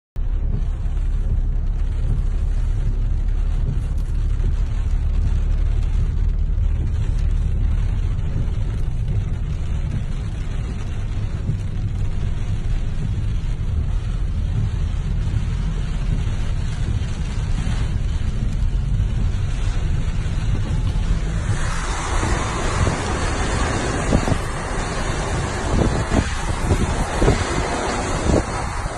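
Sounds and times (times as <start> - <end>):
waterfall rushing: 20.5 - 28.9.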